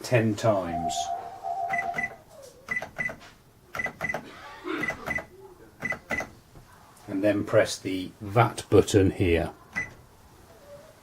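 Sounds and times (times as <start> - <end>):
short high beeps: 1.6 - 2.2.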